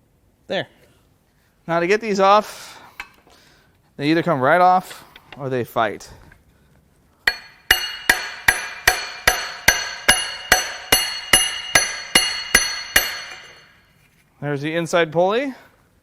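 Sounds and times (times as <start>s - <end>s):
hammer blows metallic clang: 7.3s - 13.8s.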